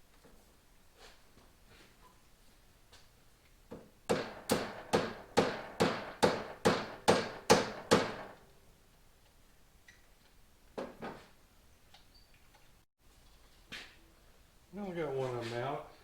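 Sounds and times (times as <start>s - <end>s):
hammer striking metal: 4.1s - 8.4s.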